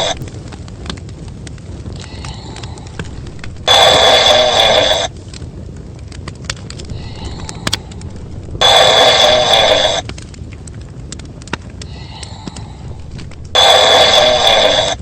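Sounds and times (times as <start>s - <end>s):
faint breathing: 2.0s - 5.0s, 6.8s - 10.0s, 11.8s - 15.0s.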